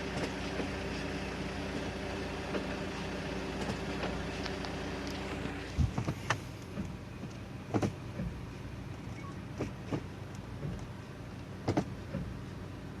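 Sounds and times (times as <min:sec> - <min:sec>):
transmission shift knocks: 0:05.8 - 0:08.5, 0:11.6 - 0:12.4.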